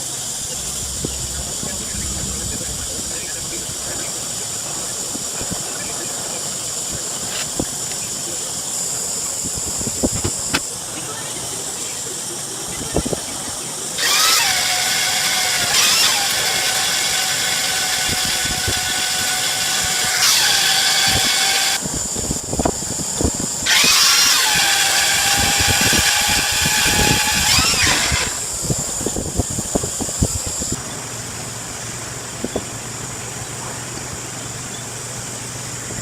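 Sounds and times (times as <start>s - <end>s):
power tool motor whining: 14.0s - 21.8s, 23.7s - 28.8s.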